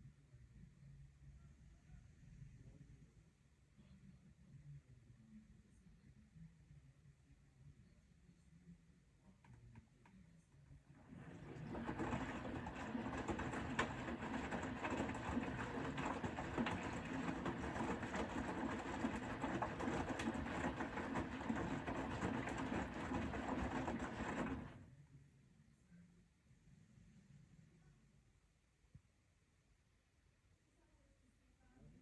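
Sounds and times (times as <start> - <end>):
washing machine drum turning: 11.0 - 24.8.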